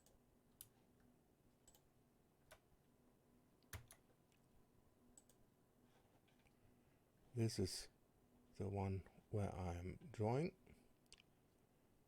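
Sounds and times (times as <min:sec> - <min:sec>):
computer mouse clicks: 0:01.6 - 0:01.9, 0:03.6 - 0:04.0, 0:05.2 - 0:05.4.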